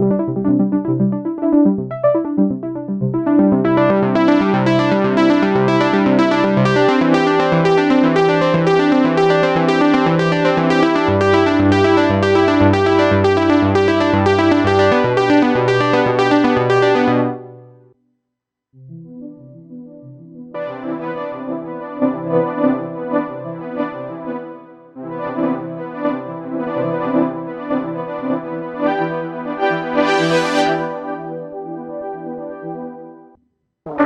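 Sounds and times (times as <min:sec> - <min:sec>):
synthesizer bass note: 0:00.0 - 0:17.9, 0:28.8 - 0:32.2
synthesizer pulsing chords: 0:00.0 - 0:17.9, 0:18.9 - 0:33.2.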